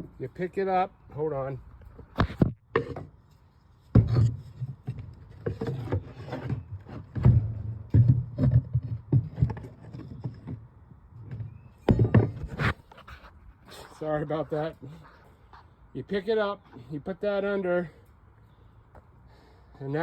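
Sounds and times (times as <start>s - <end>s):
wood knocking and scraping: 2.0s - 13.3s.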